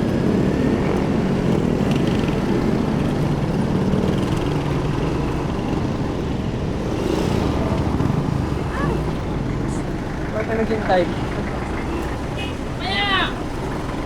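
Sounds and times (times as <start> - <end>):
motorcycle engine and road noise: 0.0 - 14.0.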